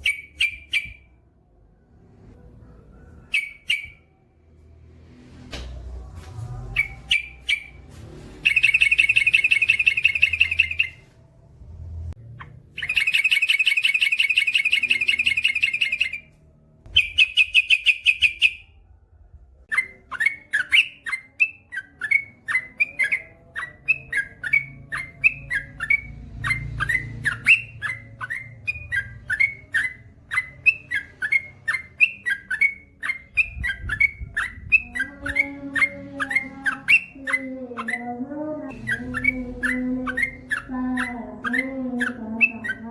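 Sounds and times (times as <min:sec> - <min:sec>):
bird singing rolling trills: 0:03.2 - 0:04.0, 0:08.4 - 0:11.1, 0:12.4 - 0:18.8, 0:19.7 - 0:42.9.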